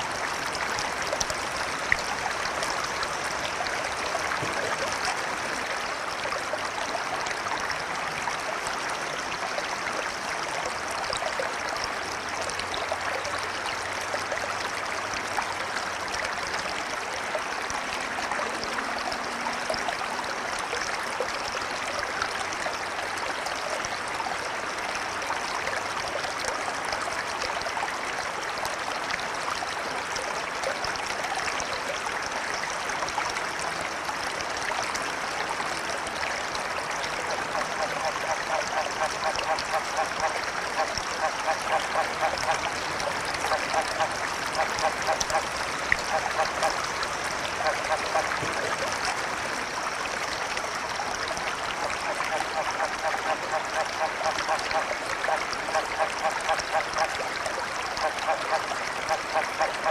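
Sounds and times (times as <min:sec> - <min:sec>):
river water flowing over stones: 0:00.0 - 0:59.9.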